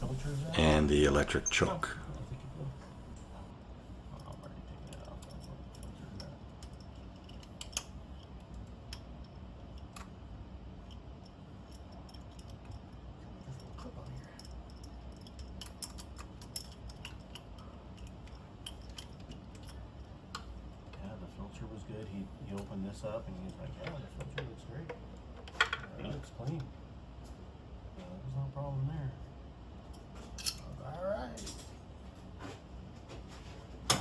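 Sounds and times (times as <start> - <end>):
low steady hum: 0.0 - 3.5.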